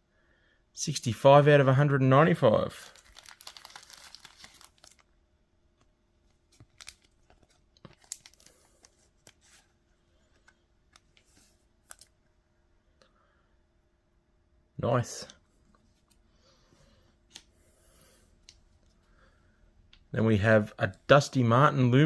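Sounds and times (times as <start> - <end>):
trading cards crinkling and rustling: 2.6 - 5.1, 5.8 - 12.2.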